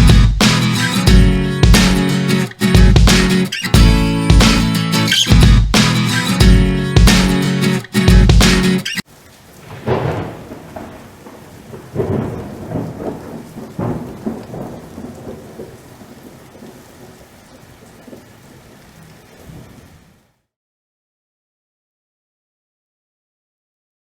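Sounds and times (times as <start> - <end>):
steady rain: 0.0 - 5.2, 5.8 - 20.5
rolling thunder: 9.5 - 20.0.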